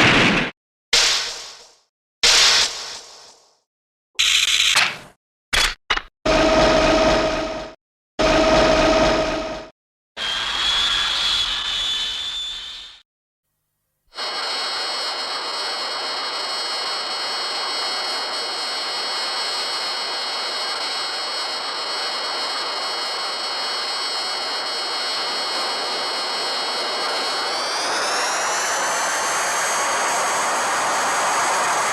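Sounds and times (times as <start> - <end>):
jet-like hiss: 14.2 - 31.9
high whining tones: 23.5 - 31.9.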